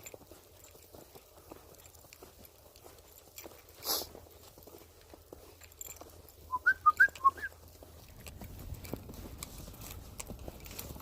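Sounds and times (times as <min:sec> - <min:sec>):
faint rustling: 0:00.0 - 0:11.0
person whistling short chirps: 0:06.5 - 0:07.5.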